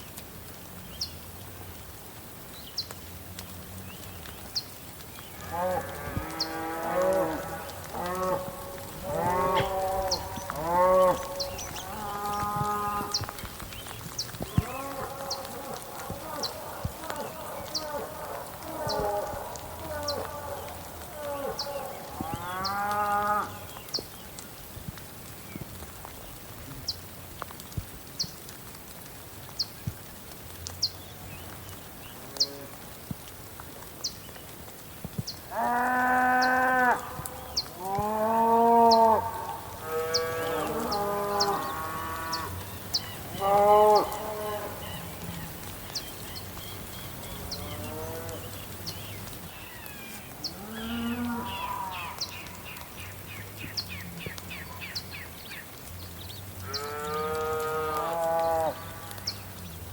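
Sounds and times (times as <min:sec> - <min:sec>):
rain hiss: 0:00.0 - 0:59.9
cows mooing: 0:05.4 - 0:13.4, 0:14.5 - 0:23.6, 0:37.8 - 0:45.6, 0:50.5 - 0:52.2, 0:56.7 - 0:58.8.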